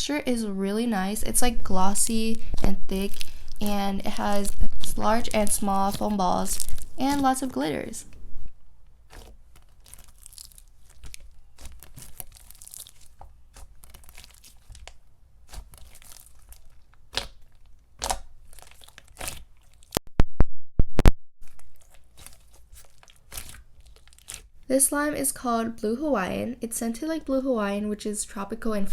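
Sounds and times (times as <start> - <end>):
slime squishing with crackles and pops: 1.0 - 8.2, 8.8 - 20.0, 21.4 - 24.7.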